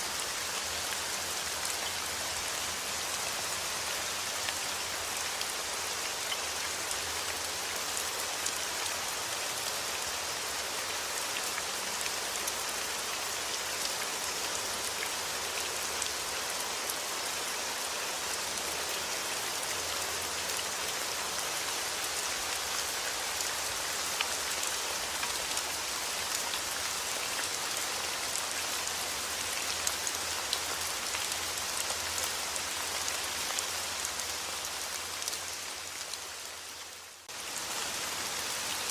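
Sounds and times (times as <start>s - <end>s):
steady rain: 0.0s - 38.9s.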